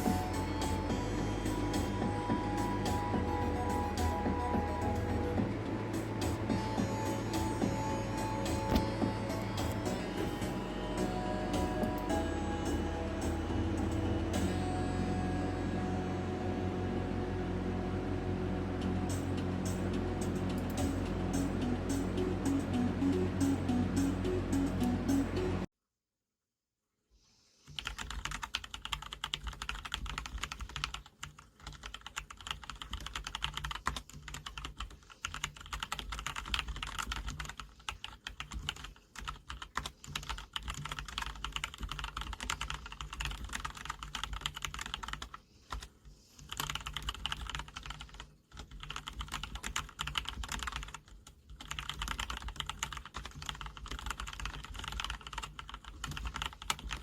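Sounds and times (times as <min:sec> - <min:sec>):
fast typing on keyboard: 0:27.8 - 0:57.0.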